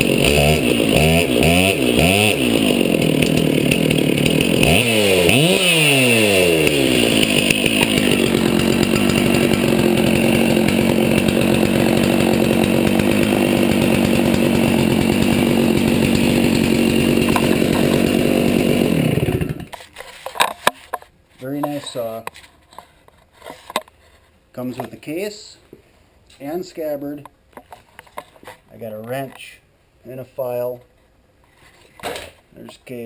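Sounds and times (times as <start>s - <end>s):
chainsaw running and revving: 0.0s - 19.7s.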